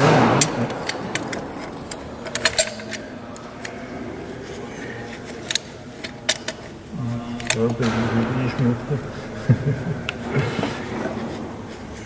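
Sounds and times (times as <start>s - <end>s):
metal parts clicking and clinking: 0.0s - 3.8s, 4.4s - 8.7s
faint background hum: 0.0s - 12.0s.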